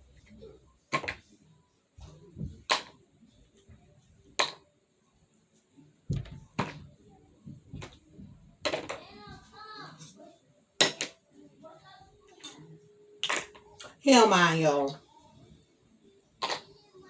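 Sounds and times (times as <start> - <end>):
soft thumps: 2.0 - 2.8, 6.1 - 9.5
dishes and utensils clicking: 12.3 - 13.9.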